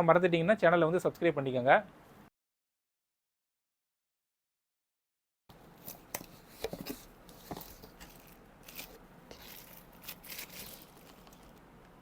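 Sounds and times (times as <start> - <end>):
packaging rustling: 5.8 - 11.6
packaging tearing: 7.5 - 11.5.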